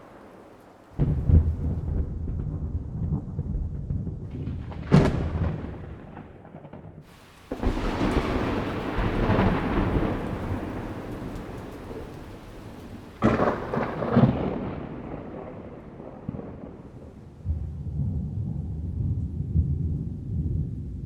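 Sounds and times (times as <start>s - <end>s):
rain hissing: 0.0s - 2.0s, 7.0s - 15.4s
rolling thunder rumble: 0.0s - 21.0s
sharp thunder crack: 0.0s - 21.0s.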